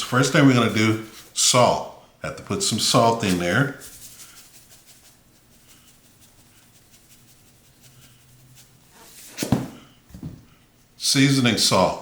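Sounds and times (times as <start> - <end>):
salt sprinkling on chicken: 2.9 - 8.9.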